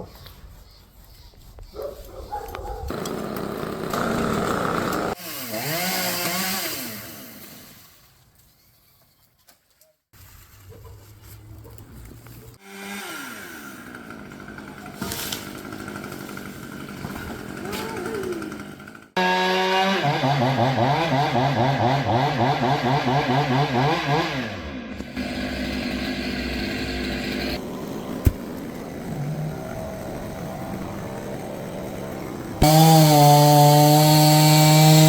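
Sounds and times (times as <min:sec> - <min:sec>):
chainsaw engine running: 0:02.9 - 0:07.1, 0:12.6 - 0:35.0.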